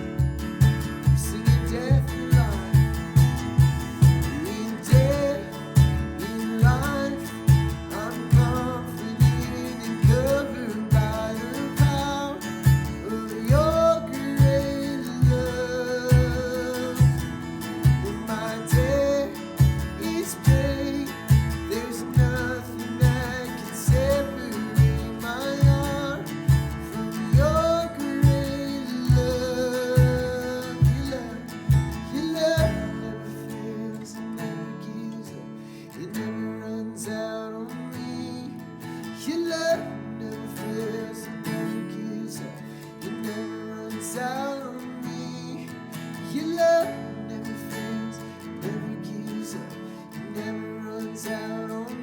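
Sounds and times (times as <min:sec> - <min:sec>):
acoustic guitar: 0:00.0 - 0:52.0
steady beat of low thumps: 0:00.1 - 0:04.4, 0:05.8 - 0:06.9, 0:07.5 - 0:10.4, 0:12.7 - 0:18.2, 0:19.6 - 0:32.1
person singing: 0:01.0 - 0:03.4, 0:04.0 - 0:35.4.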